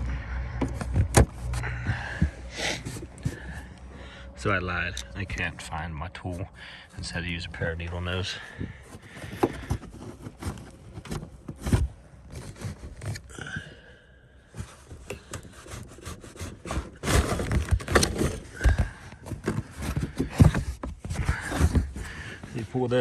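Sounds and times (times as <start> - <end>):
plastic trim panel being pried: 0.6 - 1.6, 8.8 - 13.3, 14.6 - 22.2.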